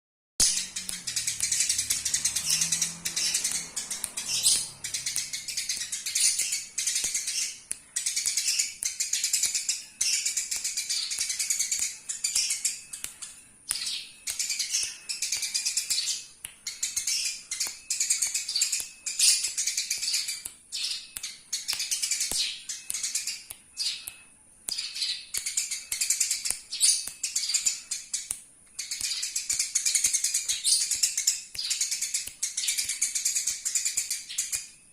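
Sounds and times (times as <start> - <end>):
sparrows chirping: 0.4 - 28.2.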